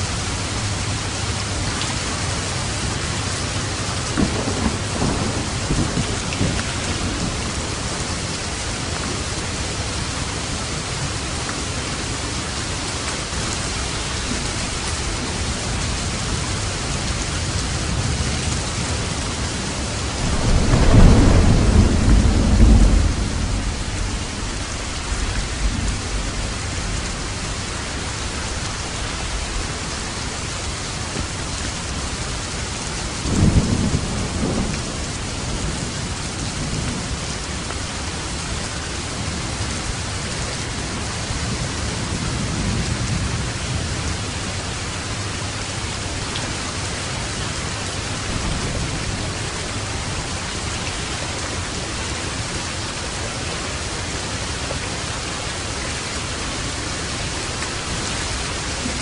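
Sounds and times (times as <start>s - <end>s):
steady rain falling: 0.0s - 59.0s
thunder rumbling: 2.2s - 12.6s, 13.3s - 40.2s.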